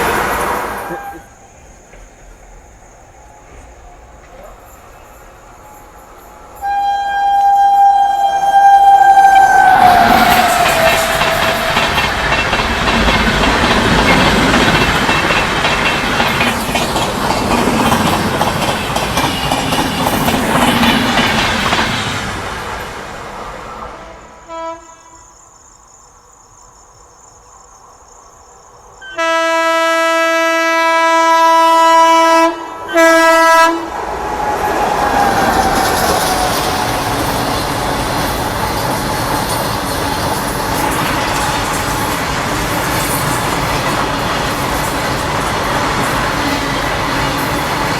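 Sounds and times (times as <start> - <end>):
lower-pitched train horn blasts: 0.0 - 1.5, 6.5 - 12.2, 23.7 - 25.4, 29.0 - 34.0
train horn: 0.0 - 1.5, 6.6 - 12.2, 23.7 - 25.4, 29.0 - 34.0
train coaches clattering over rails: 0.0 - 24.0, 32.8 - 47.9.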